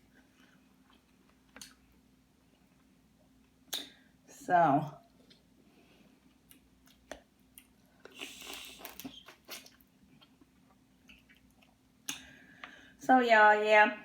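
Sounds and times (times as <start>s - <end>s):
person chewing: 6.2s - 12.7s.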